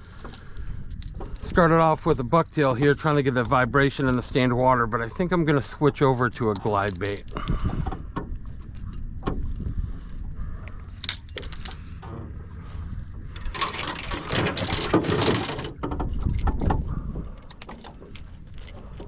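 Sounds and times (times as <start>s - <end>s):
metal hooks clinking and rattling: 0.0s - 5.0s, 6.0s - 16.8s.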